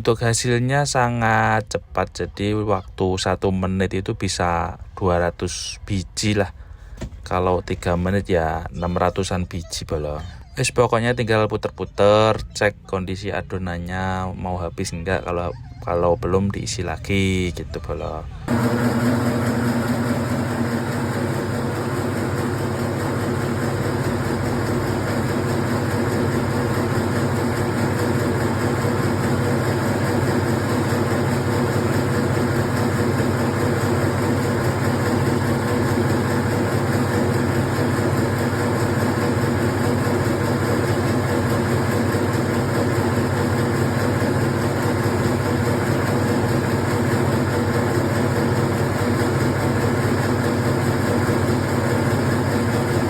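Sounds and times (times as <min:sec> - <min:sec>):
machine humming: 0:18.2 - 0:53.0.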